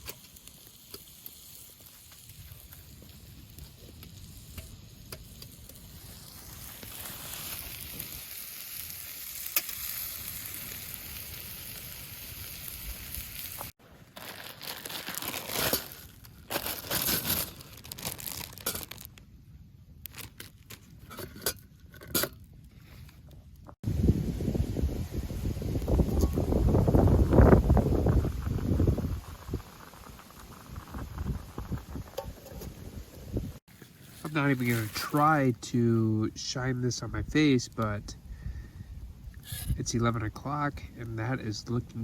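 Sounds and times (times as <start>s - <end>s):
crackles and clicks: 0.0s - 23.8s, 25.6s - 38.2s
meat sizzling in a pan: 5.6s - 13.8s.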